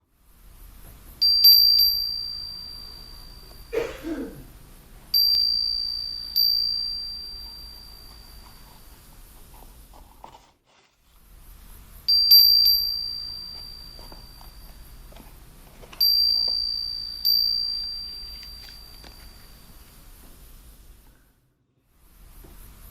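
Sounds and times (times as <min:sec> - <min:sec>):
high-pitched chime ringing: 0:01.2 - 0:03.9, 0:05.1 - 0:09.0, 0:12.1 - 0:15.0, 0:16.0 - 0:19.8.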